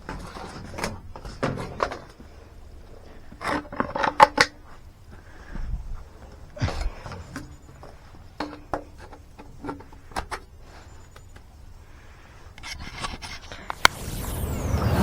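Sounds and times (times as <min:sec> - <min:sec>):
equipment handling clicks and knocks: 0:00.0 - 0:04.9, 0:05.5 - 0:11.5
hiss: 0:13.8 - 0:15.0.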